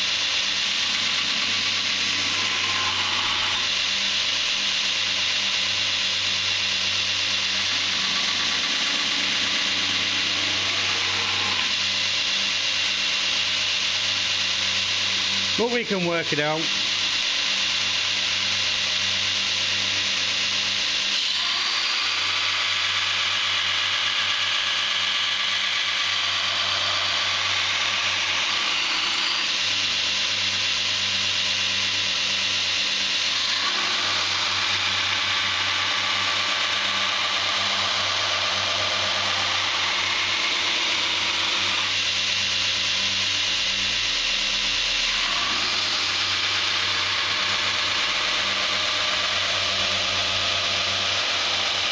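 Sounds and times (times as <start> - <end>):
blade grinding on belt: 0.0 - 5.7, 31.6 - 43.9
grinder motor hum: 0.0 - 51.9.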